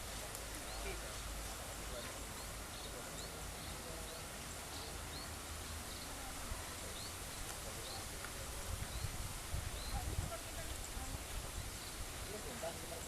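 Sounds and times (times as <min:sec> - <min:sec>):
low rumble and hiss: 0:00.0 - 0:13.0
bird chirping: 0:00.6 - 0:01.2, 0:01.9 - 0:08.2, 0:08.8 - 0:10.2.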